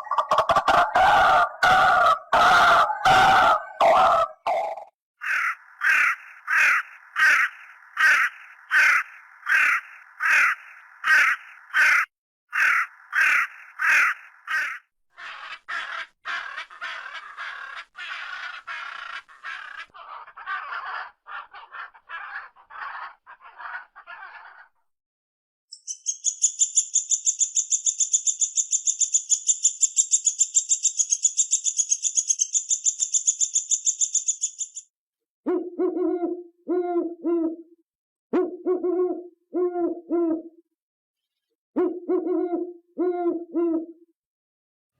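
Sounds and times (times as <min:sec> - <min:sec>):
bird chattering: 0:04.5 - 0:24.7.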